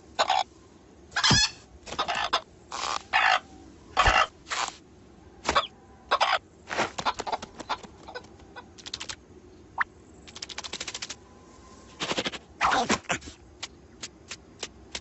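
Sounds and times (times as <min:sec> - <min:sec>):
quick run of clicks: 0:06.7 - 0:09.2, 0:10.2 - 0:11.2, 0:13.6 - 0:15.0.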